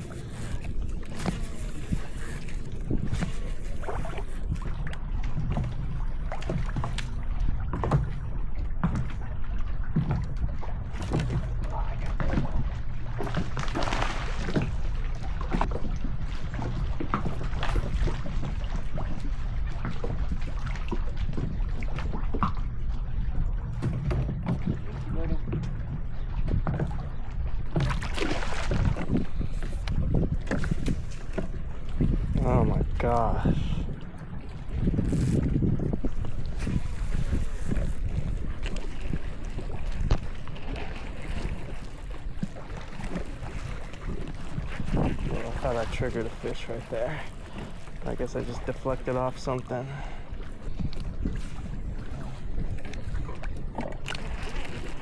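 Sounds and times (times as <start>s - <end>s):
water sloshing and splashing: 0.0s - 55.0s
wind buffeting microphone: 0.0s - 55.0s
steady low rumble: 19.2s - 43.1s.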